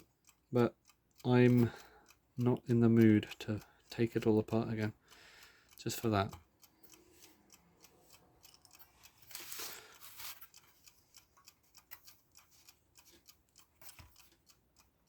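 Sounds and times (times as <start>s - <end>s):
alarm clock ticking: 0.0s - 15.0s
handling rustle: 9.2s - 10.6s.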